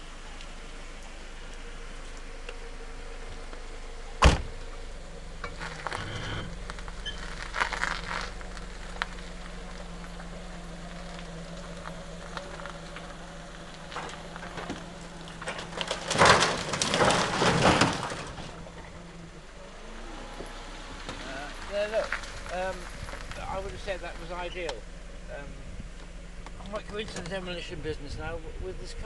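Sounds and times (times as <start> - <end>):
car engine hum: 0.0 - 29.0
wood creaking and cracking: 5.4 - 19.2, 20.4 - 24.8
timber crashing: 13.8 - 19.0.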